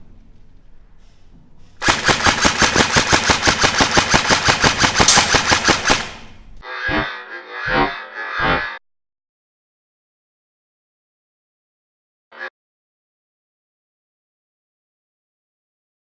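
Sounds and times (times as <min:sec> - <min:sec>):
airsoft rifle full-auto burst: 0:01.8 - 0:06.4
music: 0:06.6 - 0:08.8, 0:12.3 - 0:12.5.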